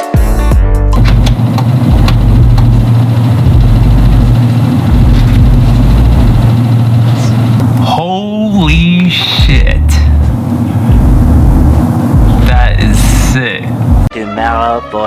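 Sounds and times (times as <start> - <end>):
music: 0.0 - 3.6, 9.4 - 15.0
pickup engine idling: 1.0 - 14.1.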